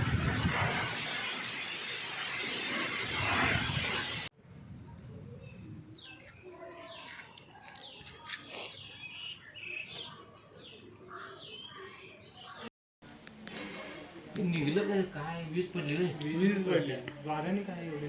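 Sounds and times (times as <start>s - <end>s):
birds chirping: 5.3s - 18.0s.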